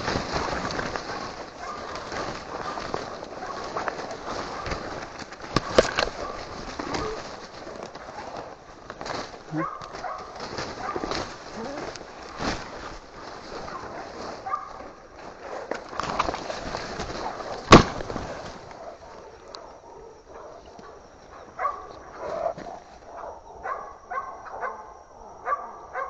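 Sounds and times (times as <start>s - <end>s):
brush crackling: 0.0s - 23.8s
dogs barking and yelping: 0.7s - 5.0s, 5.6s - 8.2s, 9.5s - 12.0s, 13.5s - 15.8s, 18.6s - 26.0s
sharp loud crack: 17.6s - 18.4s.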